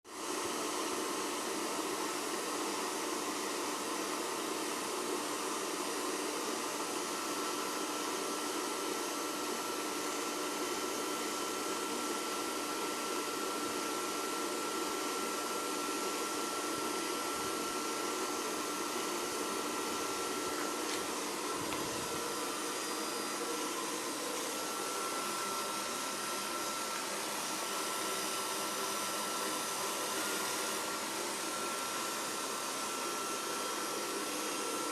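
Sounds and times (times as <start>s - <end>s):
cookstove fan whirring: 0.3s - 34.9s
thin steady whine: 15.8s - 34.9s.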